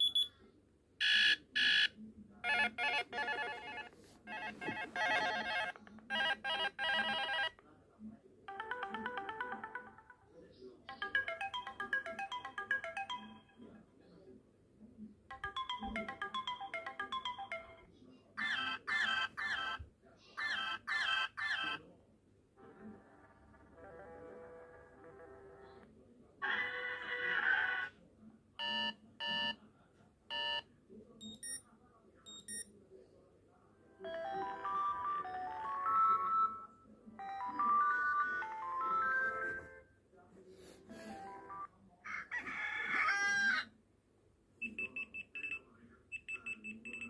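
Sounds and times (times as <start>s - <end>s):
tablet alarm melody: 8.5s - 10.2s, 10.9s - 13.6s, 15.3s - 19.8s, 34.0s - 39.8s
tablet alarm tones: 10.9s - 13.6s, 15.3s - 17.8s.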